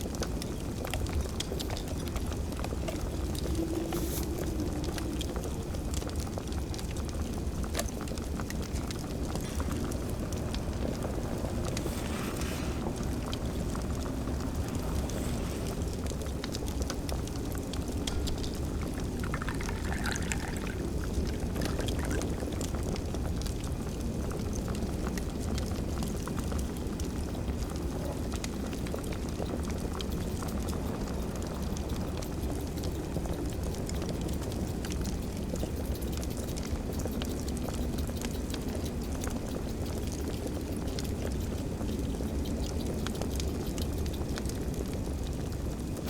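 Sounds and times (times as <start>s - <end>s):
faint baking sounds: 0.0s - 46.0s
wood fire crackling: 0.0s - 46.0s
low rumble: 1.4s - 19.6s.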